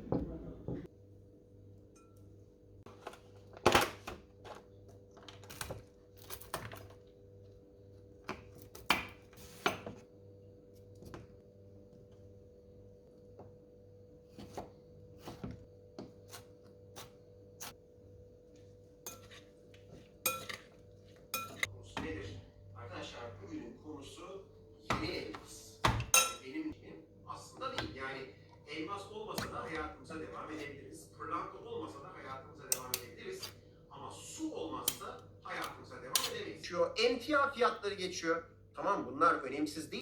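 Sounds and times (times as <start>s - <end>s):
dishes and cutlery clinking: 19.0s - 21.7s, 25.8s - 26.6s.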